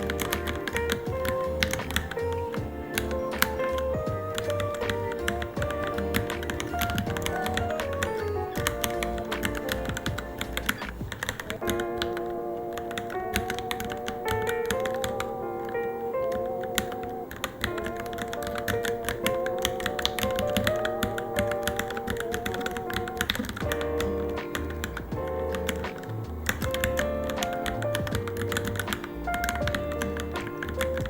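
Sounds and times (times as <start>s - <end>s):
background music: 0.0s - 31.0s
keyboard keystrokes clicking: 0.0s - 31.0s.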